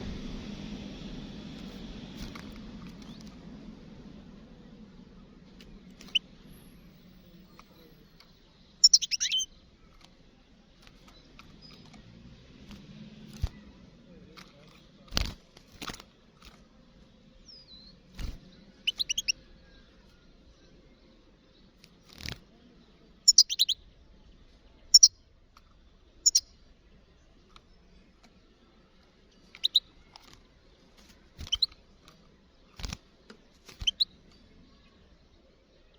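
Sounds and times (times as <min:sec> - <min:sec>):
bird twittering calls: 0:05.9 - 0:08.0, 0:08.8 - 0:09.5, 0:17.5 - 0:19.9, 0:23.3 - 0:23.8, 0:24.9 - 0:25.2, 0:26.2 - 0:26.5, 0:29.5 - 0:29.9, 0:31.4 - 0:31.8, 0:33.7 - 0:34.4.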